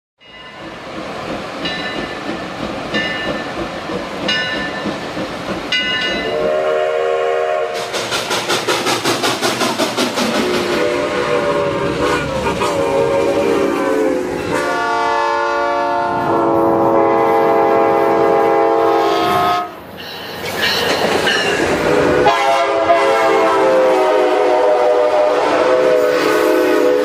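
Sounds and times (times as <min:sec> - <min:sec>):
train rumble: 0:00.2 - 0:27.0
wheels clacking over rail joints: 0:00.3 - 0:06.4, 0:07.8 - 0:11.0, 0:19.9 - 0:22.1
train horn chord: 0:06.2 - 0:07.9, 0:10.6 - 0:19.8, 0:21.9 - 0:27.0.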